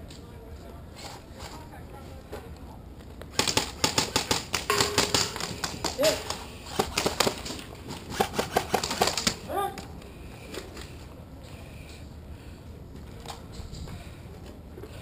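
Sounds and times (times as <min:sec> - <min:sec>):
airsoft guns firing: 0:03.3 - 0:09.4.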